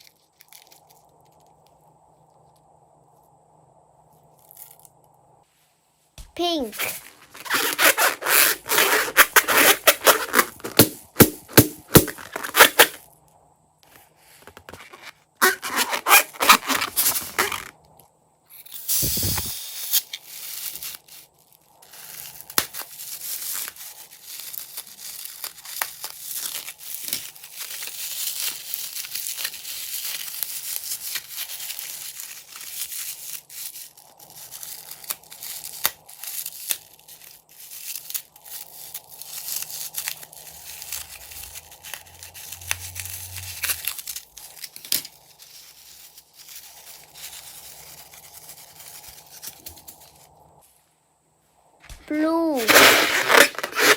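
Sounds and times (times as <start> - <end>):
crunchy slime crackling: 0.0 - 1.8, 6.4 - 13.1, 19.2 - 50.6, 51.9 - 53.9.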